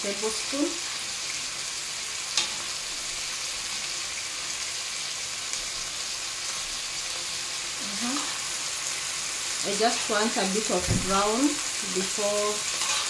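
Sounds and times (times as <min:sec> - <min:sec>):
chicken sizzling in oil: 0:00.0 - 0:13.0.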